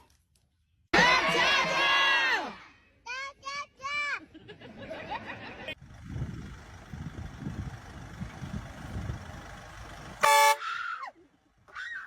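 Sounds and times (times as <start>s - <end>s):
low rumbling: 5.8s - 10.2s
short loud horn toot: 10.2s - 10.7s.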